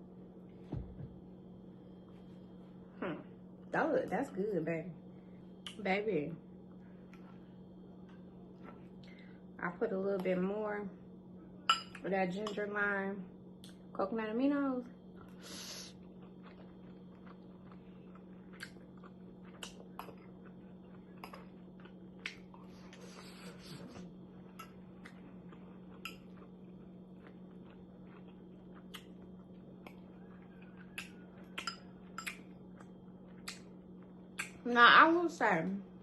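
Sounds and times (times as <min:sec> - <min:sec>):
steady low hum: 0:00.0 - 0:36.0
chewing: 0:15.2 - 0:34.6.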